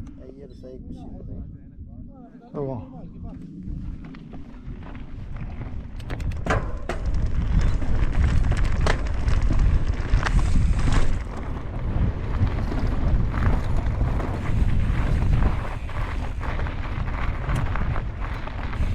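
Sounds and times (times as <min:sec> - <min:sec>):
wind rumbling over microphone: 0:00.0 - 0:18.9
bike clattering over rocks: 0:06.3 - 0:18.9.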